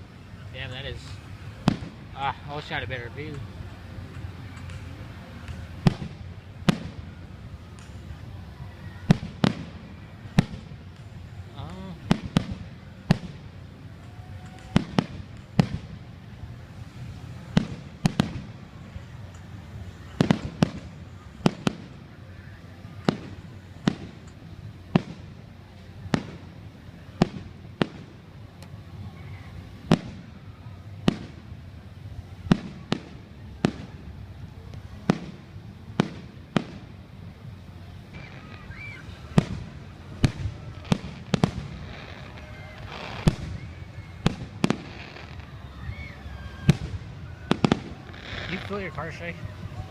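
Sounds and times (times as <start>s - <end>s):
fireworks booming: 0.6s - 8.2s, 8.9s - 49.9s.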